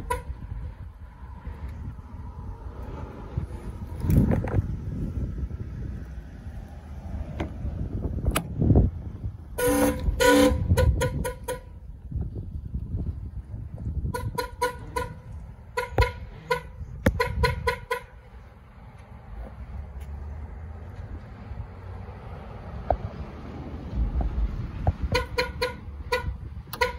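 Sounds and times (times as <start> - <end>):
car horn honking: 0.0 - 0.5, 9.6 - 11.9, 14.0 - 18.3, 25.1 - 26.9
wind rumble on microphone: 0.0 - 26.9.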